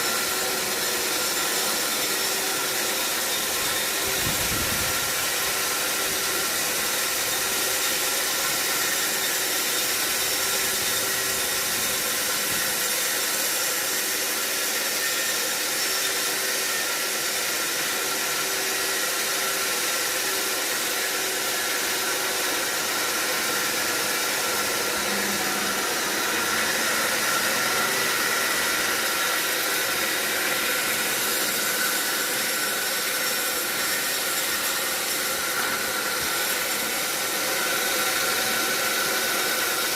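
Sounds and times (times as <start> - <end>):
sawmill saw cutting log: 0.0 - 39.9.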